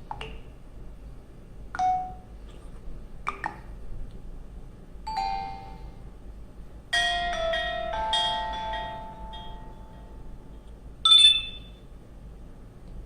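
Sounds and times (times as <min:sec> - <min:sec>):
phone chime alerts: 0:05.1 - 0:06.0, 0:11.1 - 0:11.8.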